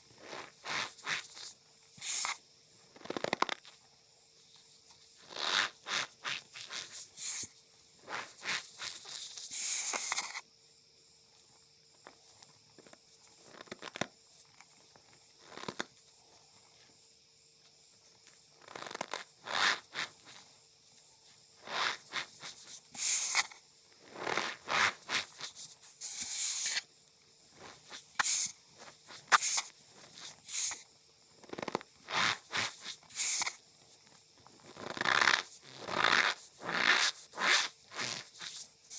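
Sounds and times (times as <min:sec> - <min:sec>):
cornstarch squeaking and crunching: 0:27.6 - 0:30.8, 0:34.7 - 0:38.6.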